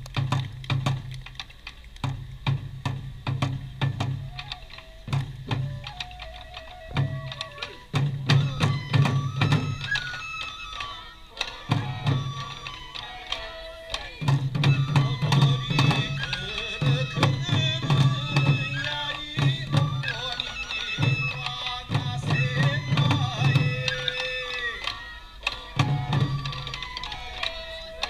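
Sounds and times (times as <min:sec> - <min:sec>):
drums beating a steady rhythm: 0:00.0 - 0:28.0
sharp percussive strikes: 0:07.0 - 0:27.6.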